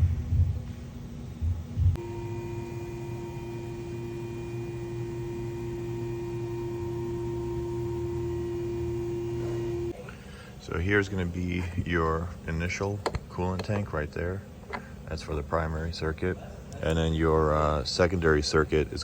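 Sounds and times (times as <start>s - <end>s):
engine idling hum: 1.6s - 10.0s
steady whining tone: 1.6s - 11.4s.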